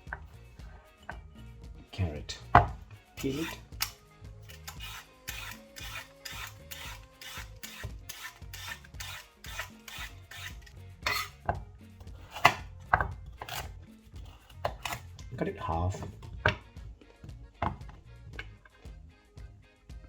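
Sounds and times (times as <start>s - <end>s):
carrot peeling scrapes: 3.2s - 3.8s, 4.4s - 15.3s.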